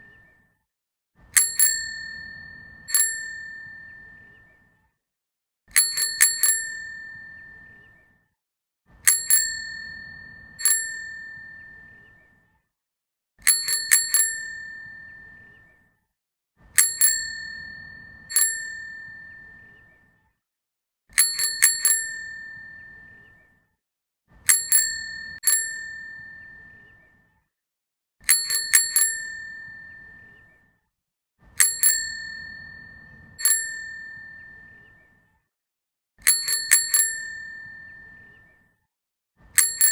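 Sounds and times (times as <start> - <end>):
bicycle bell ringing: 1.4 - 4.3, 5.7 - 7.9, 9.0 - 12.0, 13.4 - 15.4, 16.8 - 19.7, 21.2 - 23.1, 24.5 - 26.8, 28.2 - 30.4, 31.6 - 34.8, 36.2 - 38.3, 39.6 - 39.9.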